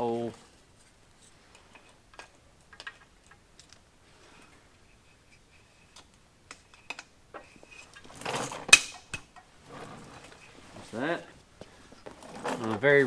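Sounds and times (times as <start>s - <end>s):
scraping rustle: 0.0s - 3.1s, 3.7s - 13.0s
small parts clicking and tapping: 1.6s - 3.8s.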